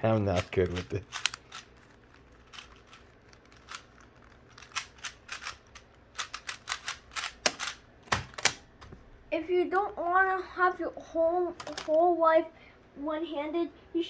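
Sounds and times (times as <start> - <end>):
speed cube clicking: 0.3 - 8.6.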